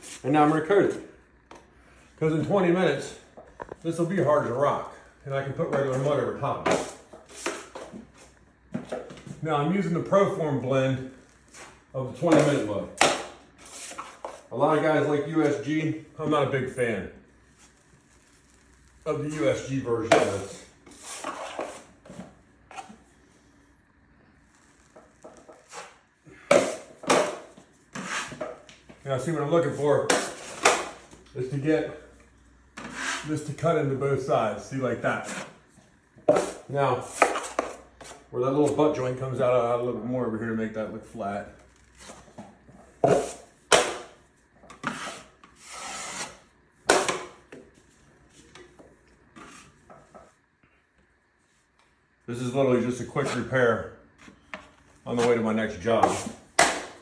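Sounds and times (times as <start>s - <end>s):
drywall knife scraping compound: 5.7s - 9.2s, 11.0s - 14.6s, 17.6s - 23.0s, 24.8s - 28.6s, 29.6s - 31.1s, 32.8s - 33.5s, 35.0s - 35.6s, 36.3s - 38.3s, 41.9s - 42.3s, 43.0s - 44.1s, 44.7s - 47.3s, 49.4s - 49.8s, 53.1s - 53.5s, 54.2s - 57.0s.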